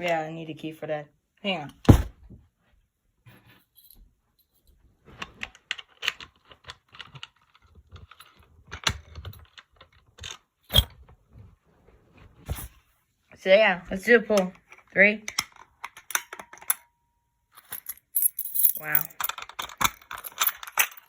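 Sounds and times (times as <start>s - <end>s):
keys jangling on a ring: 17.6s - 19.3s, 20.1s - 21.0s.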